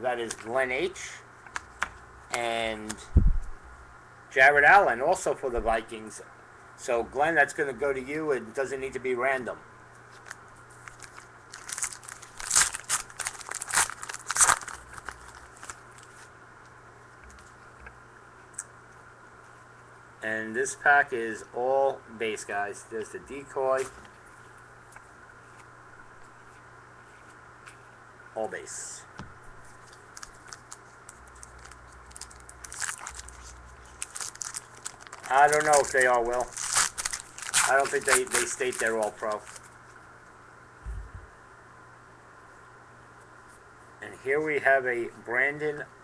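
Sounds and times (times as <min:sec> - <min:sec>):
foil wrapper tearing and crinkling: 0:10.2 - 0:16.1, 0:29.8 - 0:39.7.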